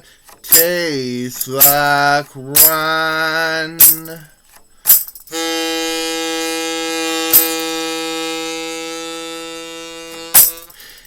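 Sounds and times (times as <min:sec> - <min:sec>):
small drum beats: 0:00.4 - 0:02.0, 0:06.4 - 0:09.1
harmonica long note: 0:05.3 - 0:10.9.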